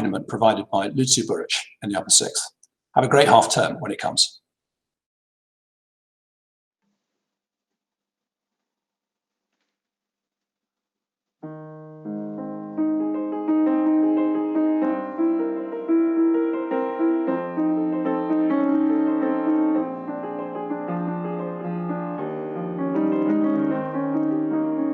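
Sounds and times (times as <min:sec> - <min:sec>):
solo piano music: 0:11.4 - 0:24.9.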